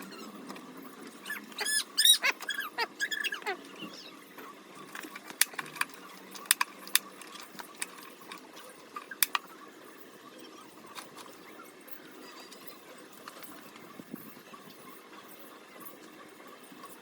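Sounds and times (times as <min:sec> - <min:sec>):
faint steady background noise: 0:00.0 - 0:17.0
clicks and taps handling parts: 0:04.8 - 0:08.4, 0:09.0 - 0:09.4.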